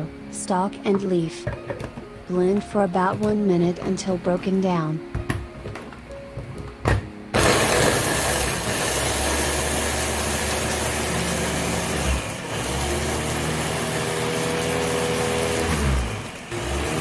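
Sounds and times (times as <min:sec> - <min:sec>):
electric blender motor running: 0:07.4 - 0:17.0.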